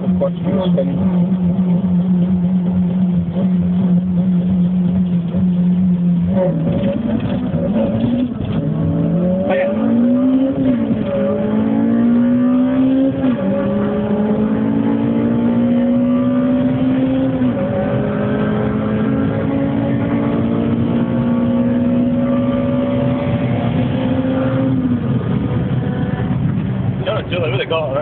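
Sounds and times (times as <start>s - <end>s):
car engine accelerating: 0.0s - 28.0s.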